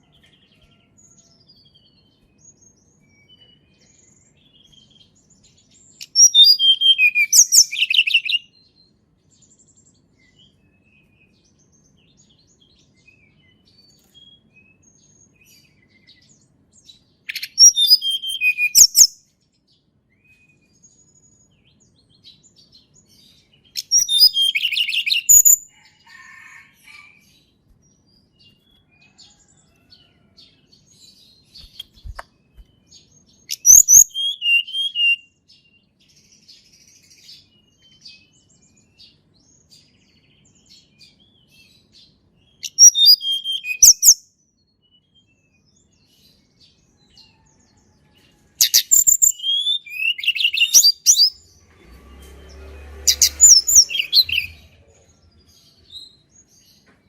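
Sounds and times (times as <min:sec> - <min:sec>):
bird whistling song: 0:05.9 - 0:08.5, 0:17.3 - 0:19.2, 0:23.7 - 0:25.8, 0:31.6 - 0:35.3, 0:42.6 - 0:44.2, 0:48.6 - 0:51.4.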